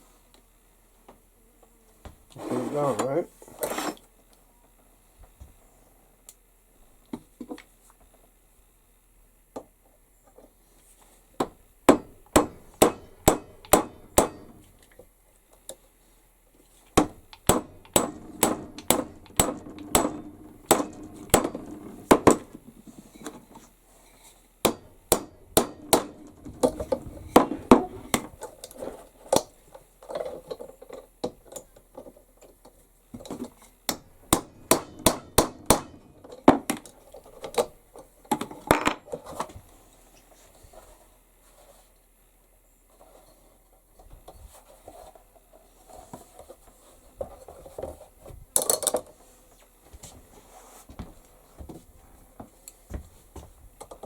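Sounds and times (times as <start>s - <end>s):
hammer peening metal rivets: 11.9s - 14.7s, 17.0s - 22.6s, 24.7s - 28.3s, 33.9s - 37.7s.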